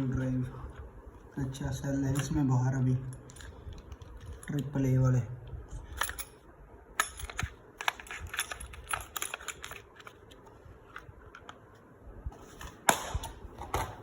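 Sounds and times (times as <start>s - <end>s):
clicks of handled accessories: 7.0s - 11.6s.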